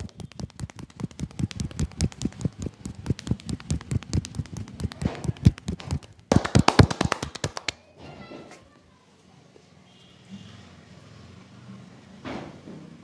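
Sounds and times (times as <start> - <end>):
hands tapping on body: 0.0 - 7.8.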